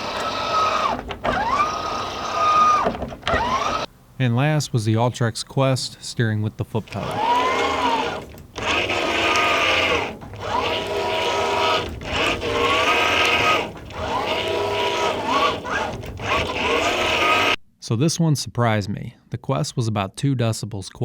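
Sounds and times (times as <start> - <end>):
electric motor whining: 0.0 - 3.9, 6.9 - 17.6.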